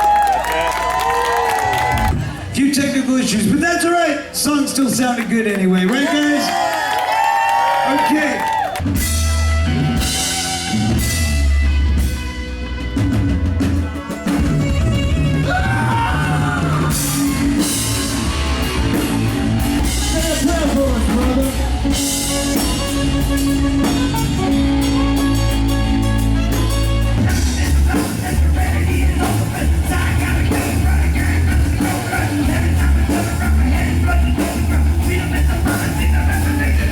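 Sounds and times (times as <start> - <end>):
drum kit: 8.7 - 36.9
electric guitar: 8.8 - 36.9
heavy low bass notes: 8.8 - 36.9
live rock band playing: 8.8 - 36.9.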